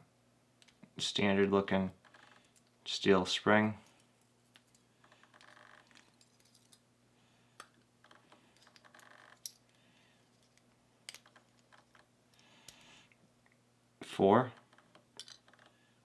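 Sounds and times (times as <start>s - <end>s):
small metal clicks: 8.5s - 9.8s.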